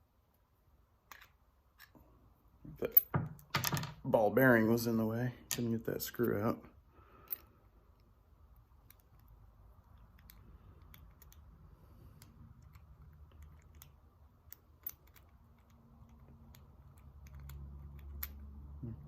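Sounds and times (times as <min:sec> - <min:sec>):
small clicks and taps: 0:08.8 - 0:11.5.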